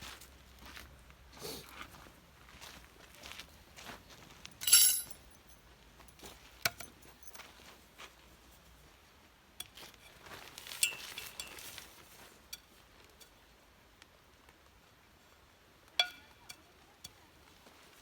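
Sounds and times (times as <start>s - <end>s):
hard objects clinking: 4.6s - 5.6s, 10.6s - 11.9s
rustling: 9.7s - 13.2s.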